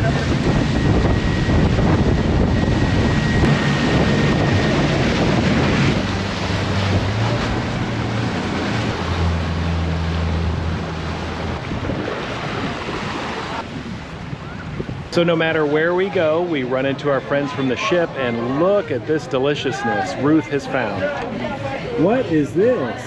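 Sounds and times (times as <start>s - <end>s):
wind buffeting microphone: 0.0s - 16.5s
boat engine hum: 0.0s - 23.0s
rushing water: 0.0s - 23.0s.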